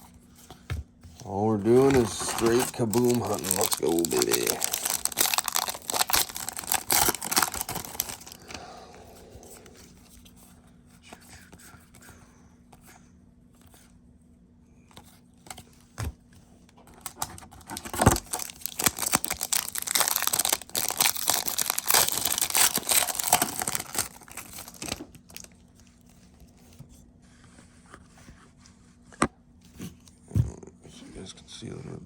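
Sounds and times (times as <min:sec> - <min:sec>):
wrappers tearing and crinkling: 0:01.2 - 0:08.5, 0:17.0 - 0:25.5.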